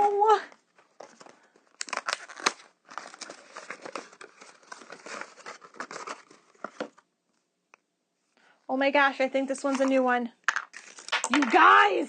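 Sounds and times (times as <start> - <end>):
packaging crinkling and tearing: 0.9 - 6.9, 10.6 - 11.3.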